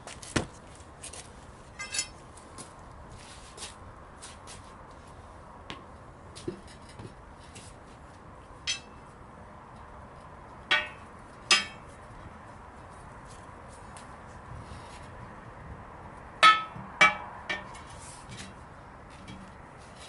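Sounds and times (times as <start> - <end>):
metal clanks on wheel rim: 1.8 - 2.2, 8.6 - 9.0, 10.7 - 12.0, 16.4 - 18.6.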